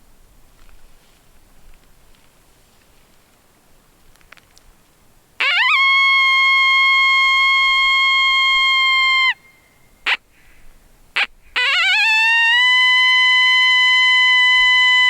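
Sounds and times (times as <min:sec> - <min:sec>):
coyote howling: 0:11.2 - 0:15.0.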